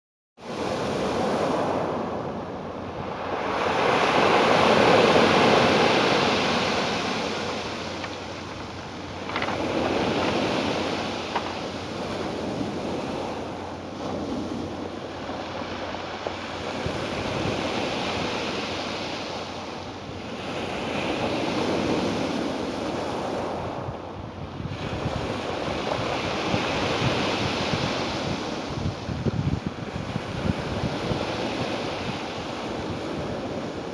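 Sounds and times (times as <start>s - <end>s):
ocean waves breaking: 0.4s - 23.9s.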